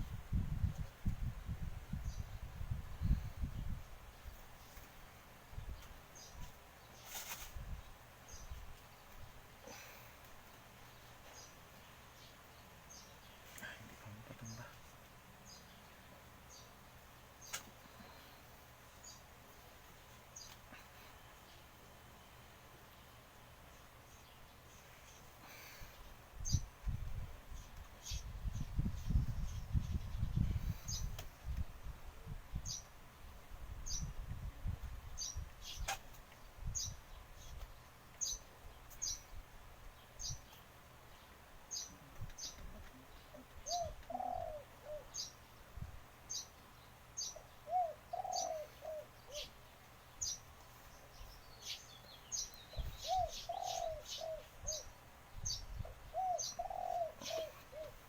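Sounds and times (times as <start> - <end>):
dove cooing: 42.5 - 45.3, 47.3 - 49.6, 52.8 - 54.9, 55.8 - 58.0.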